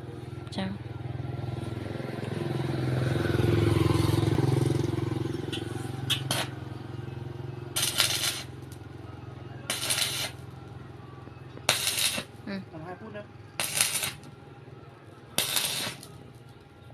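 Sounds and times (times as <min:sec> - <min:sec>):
engine running: 0:01.4 - 0:16.9
loud hissing crackle: 0:06.1 - 0:06.5, 0:07.8 - 0:08.8, 0:09.7 - 0:10.4, 0:11.6 - 0:12.4, 0:13.6 - 0:14.3, 0:15.4 - 0:16.2.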